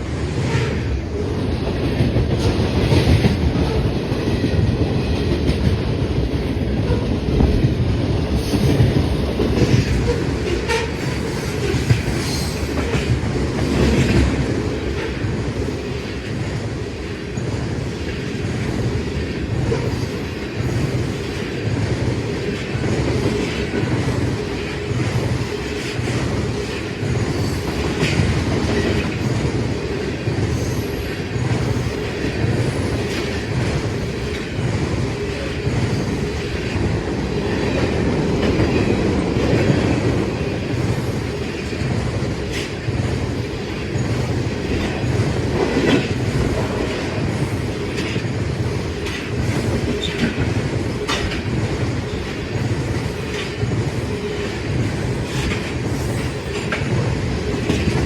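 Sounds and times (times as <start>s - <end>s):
train wheels clacking on rails: 0.0s - 58.0s.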